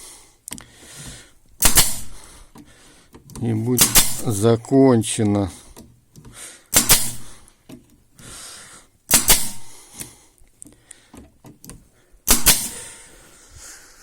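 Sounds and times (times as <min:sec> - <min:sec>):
pneumatic stapler firing: 0:01.6 - 0:02.2, 0:03.8 - 0:04.3, 0:06.7 - 0:07.4, 0:09.1 - 0:09.8, 0:12.3 - 0:13.0.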